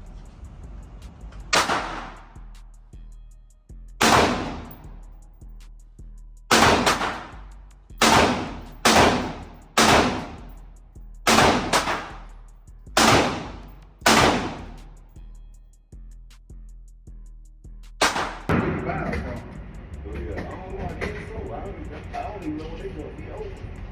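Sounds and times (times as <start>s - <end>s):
gunshots: 1.6s - 2.3s, 4.0s - 4.8s, 6.5s - 7.4s, 8.0s - 10.5s, 11.3s - 12.2s, 13.0s - 14.9s, 18.0s - 19.6s.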